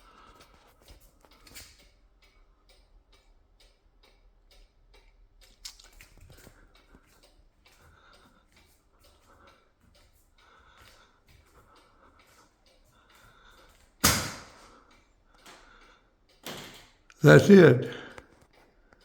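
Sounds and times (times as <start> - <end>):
cuckoo clock ticking: 1.3 - 5.6, 6.6 - 14.0.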